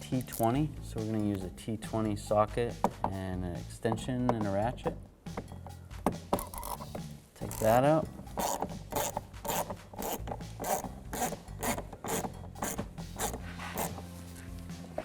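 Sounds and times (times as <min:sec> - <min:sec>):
ratchet pawl clicking: 0:08.4 - 0:13.9.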